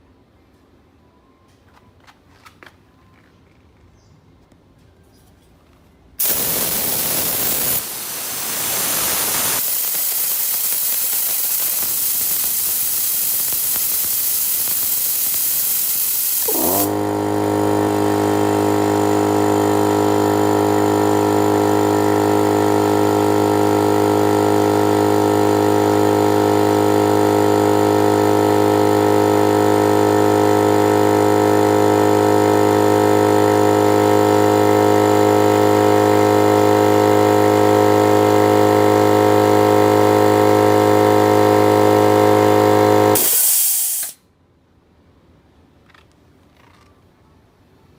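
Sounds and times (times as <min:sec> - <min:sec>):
compressed air hissing: 0:06.2 - 0:27.1, 0:41.8 - 0:44.2
air compressor motor humming: 0:06.2 - 0:44.2.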